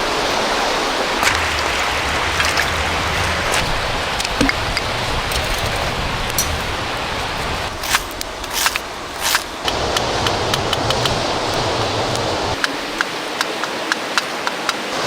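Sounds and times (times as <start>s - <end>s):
river rushing: 0.0s - 15.0s
short scraping strokes: 7.8s - 9.6s.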